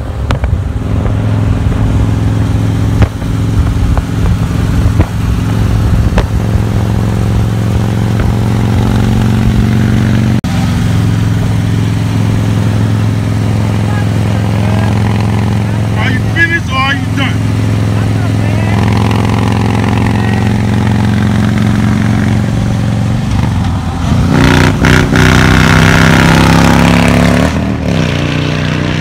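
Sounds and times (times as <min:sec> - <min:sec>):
vehicle engine droning: 0:00.0 - 0:29.0.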